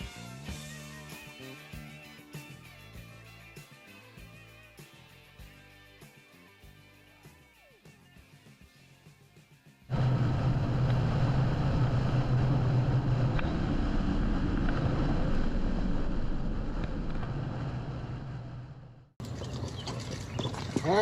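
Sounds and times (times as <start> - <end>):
wind rush on microphone: 9.9 - 19.0
motorcycle engine running: 9.9 - 20.6.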